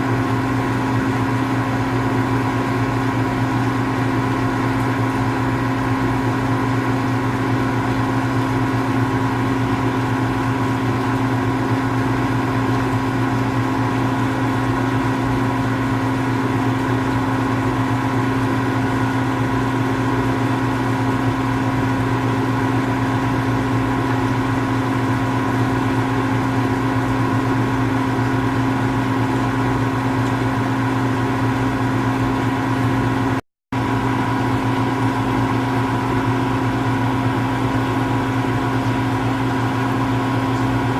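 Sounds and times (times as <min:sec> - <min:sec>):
steady machine hum: 0:00.0 - 0:40.9.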